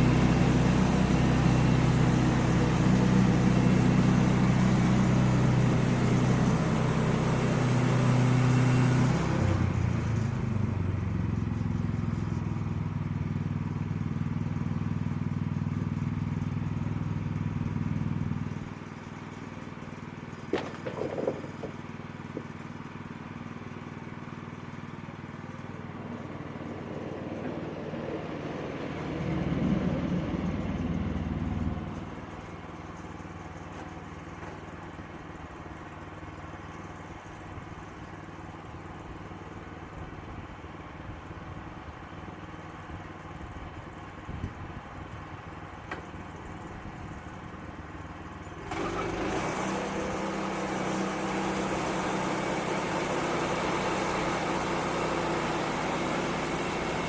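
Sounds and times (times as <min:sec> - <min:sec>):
sawmill engine running: 0:00.0 - 0:57.0
saw blade cutting wood: 0:48.7 - 0:57.0.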